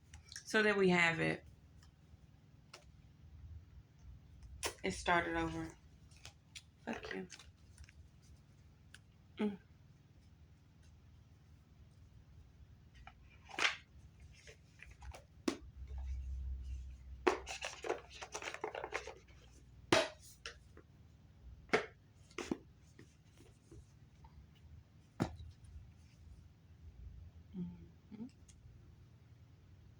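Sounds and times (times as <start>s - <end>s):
rustling and handling: 4.0s - 26.6s.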